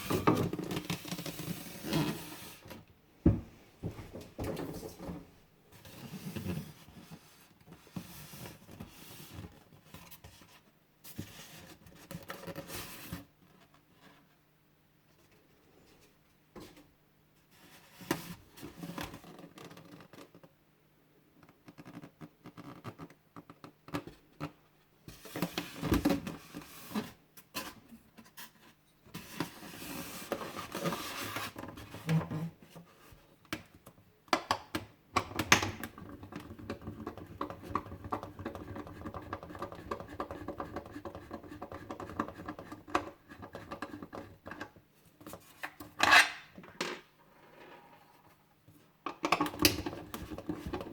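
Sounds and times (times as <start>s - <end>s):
cardboard and plastic packaging rustling: 0.0s - 2.8s.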